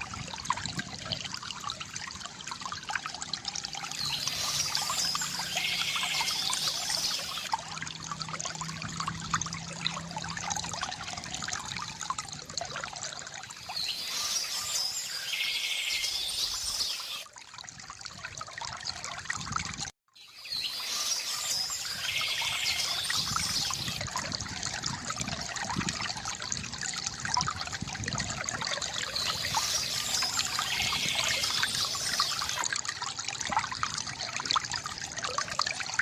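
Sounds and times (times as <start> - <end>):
water pouring from fountain: 0.0 - 36.0
bird singing: 4.0 - 7.5, 13.6 - 17.2, 20.2 - 24.0, 29.0 - 32.6.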